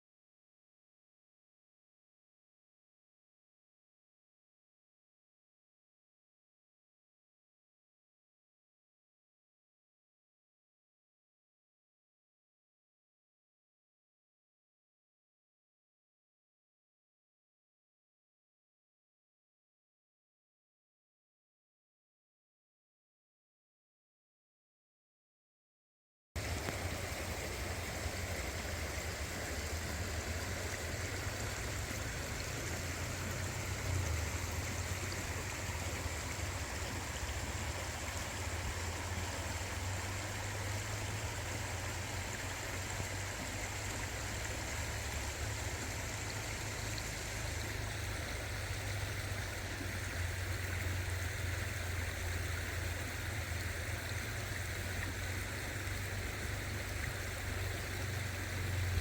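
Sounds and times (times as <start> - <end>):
creek water flowing: 26.4 - 59.0.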